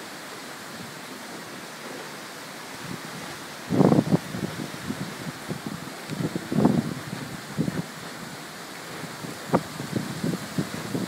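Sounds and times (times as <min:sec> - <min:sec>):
wind blowing in a steady hiss: 0:00.0 - 0:11.0
wind gusts buffeting microphone: 0:02.7 - 0:11.0.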